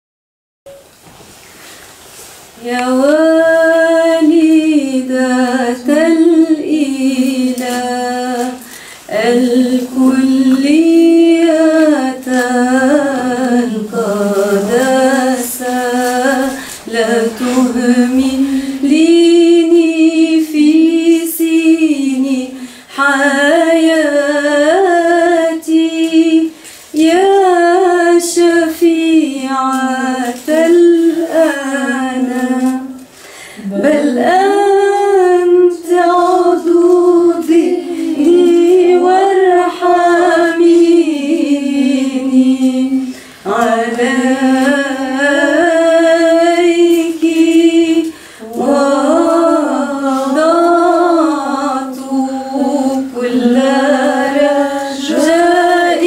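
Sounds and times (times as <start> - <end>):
woman singing a hymn unaccompanied: 2.6 - 56.0
woman breathing: 8.6 - 9.1, 33.1 - 33.6, 48.1 - 48.4.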